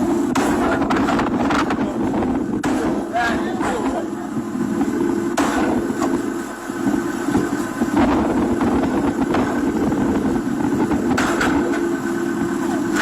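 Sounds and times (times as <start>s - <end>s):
large engine running: 0.0s - 13.0s
sharp knocks: 2.6s - 4.0s, 5.4s - 6.2s, 10.9s - 11.9s.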